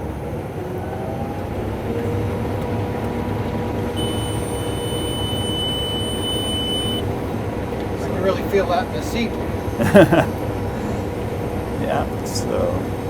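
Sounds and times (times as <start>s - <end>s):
combine harvester engine drone: 0.0s - 13.0s
high-pitched electronic beep: 4.0s - 7.0s.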